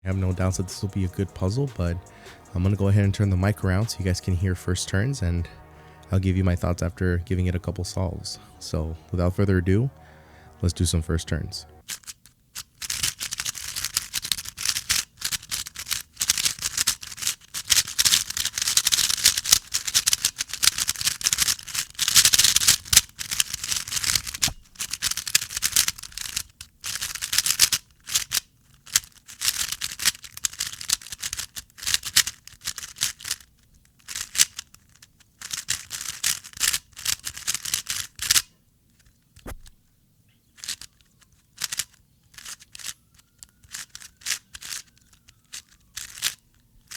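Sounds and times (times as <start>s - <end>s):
puzzle cube clicking: 11.9s - 39.8s, 40.5s - 46.9s.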